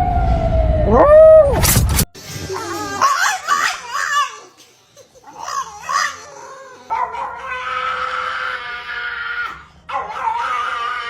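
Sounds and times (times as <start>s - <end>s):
dog howling: 2.5s - 11.0s
dog yowling: 2.5s - 11.0s.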